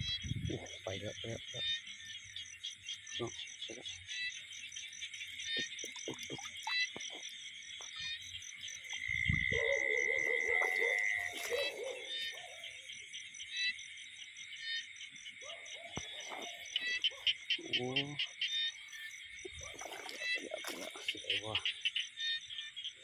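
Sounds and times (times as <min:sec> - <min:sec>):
frogs and insects calling: 0:00.0 - 0:23.0.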